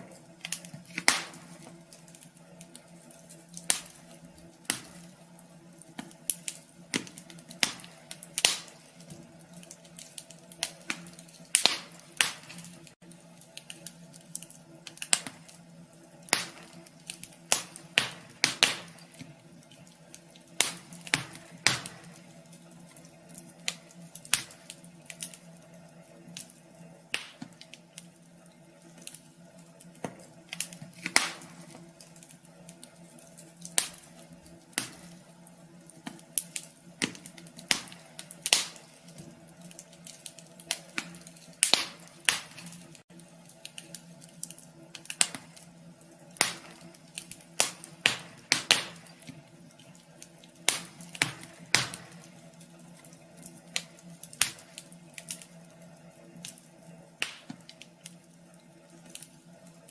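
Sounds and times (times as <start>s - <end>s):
faint steady hum: 0.0s - 59.9s
wood fire crackling: 0.0s - 59.9s.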